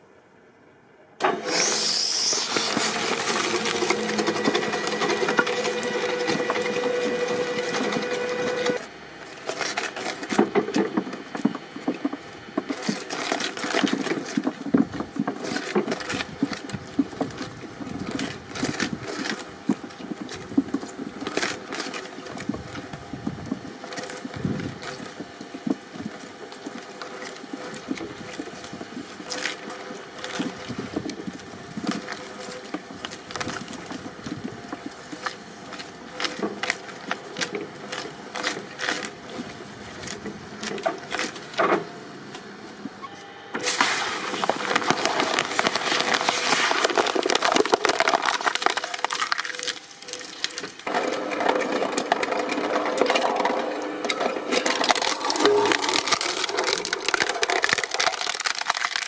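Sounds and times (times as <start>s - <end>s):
shredding machine running: 1.2s - 59.0s
sharp cracks and snaps: 43.6s - 50.9s, 54.1s - 59.0s.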